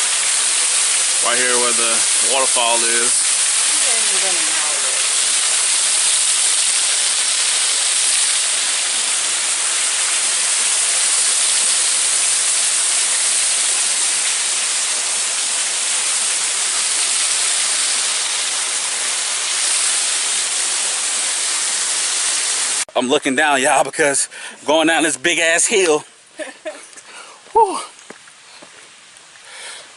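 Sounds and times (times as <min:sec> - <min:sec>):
waterfall rushing: 0:00.0 - 0:22.9.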